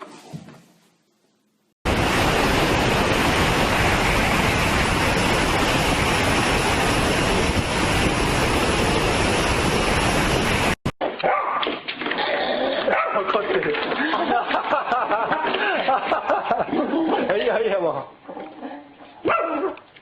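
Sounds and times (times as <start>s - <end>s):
loud steady rushing noise: 1.9s - 10.8s.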